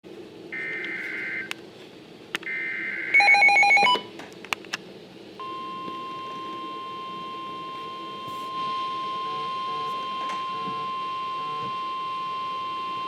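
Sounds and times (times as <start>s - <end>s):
steady warning alarm tone: 0.5s - 1.5s, 2.5s - 4.0s, 5.4s - 13.0s.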